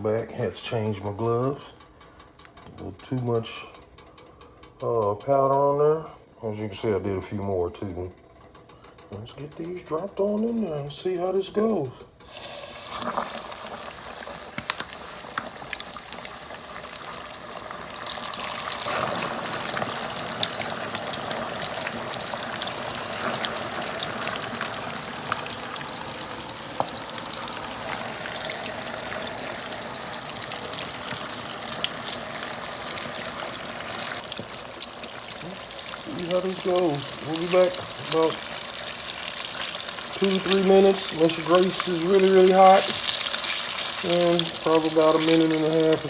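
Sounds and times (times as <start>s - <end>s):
crackles and pops of frying: 1.0s - 5.8s, 8.2s - 46.0s
meat deep-frying in grease: 11.3s - 46.0s.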